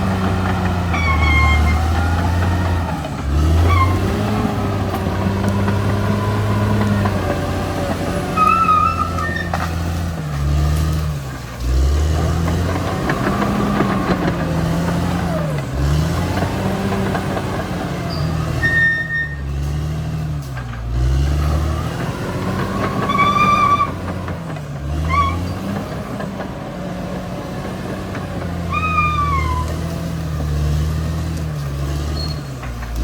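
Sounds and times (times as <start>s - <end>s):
bulldozer diesel engine lugging: 0.0s - 33.0s
high machine squeals: 0.9s - 2.2s, 8.3s - 9.6s, 18.1s - 19.5s, 23.0s - 24.0s, 28.7s - 29.7s.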